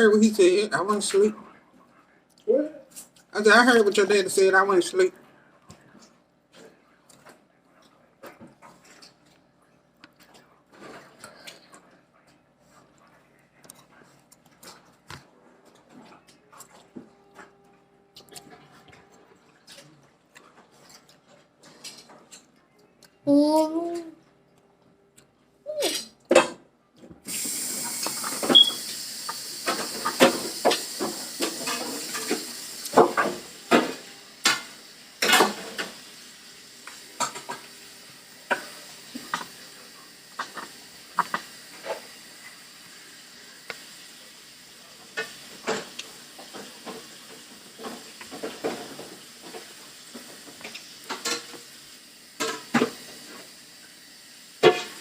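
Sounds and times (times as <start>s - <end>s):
steady hiss: 27.2s - 55.0s.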